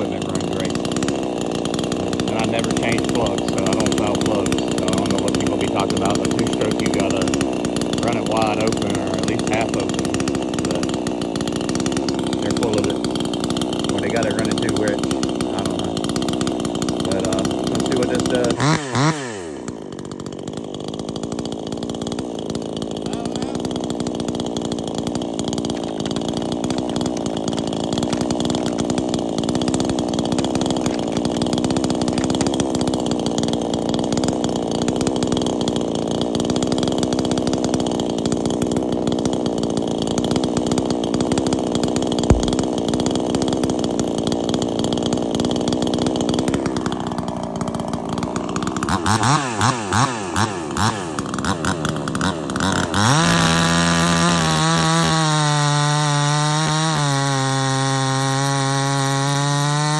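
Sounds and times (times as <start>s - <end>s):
chainsaw cutting through log: 0.0s - 59.9s
sharp knock: 42.3s - 42.7s.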